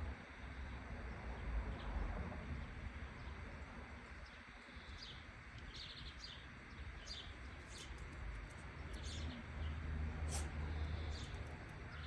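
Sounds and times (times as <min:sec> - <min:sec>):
small birds chirping: 0:04.1 - 0:12.0.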